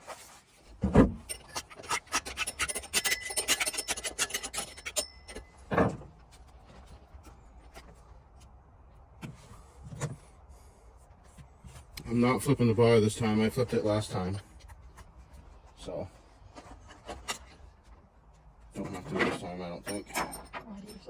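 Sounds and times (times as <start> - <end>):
metallic clicks and rattles: 1.2 - 5.5
saw chain thumping: 1.3 - 5.5.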